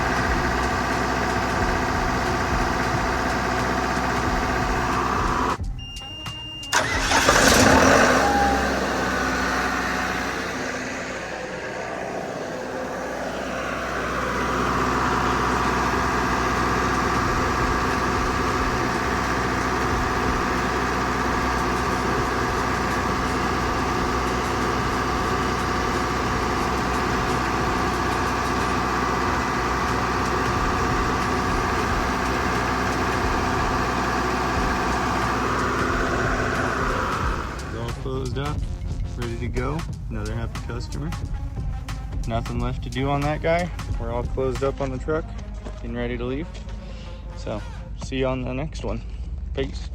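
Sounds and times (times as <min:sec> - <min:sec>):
loud noisy burst: 0:00.0 - 0:05.6, 0:06.7 - 0:38.3
engine running steadily: 0:00.0 - 0:49.9.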